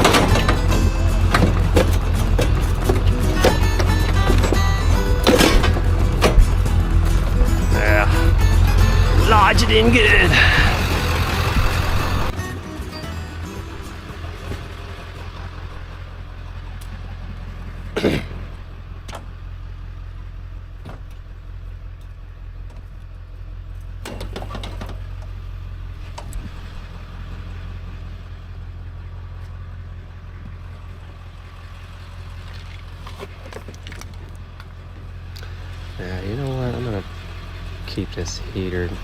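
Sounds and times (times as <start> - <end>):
scrap metal clanking: 0.0 - 7.4
vehicle engine idling: 0.0 - 39.0.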